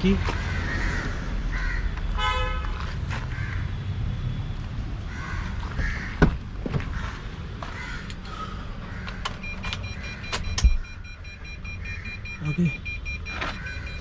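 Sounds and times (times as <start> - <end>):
crows cawing: 0.2 - 2.0, 3.3 - 3.6, 5.1 - 9.4
car key clicking in ignition: 9.1 - 11.0
pulsing electronic warning chime: 9.4 - 14.0.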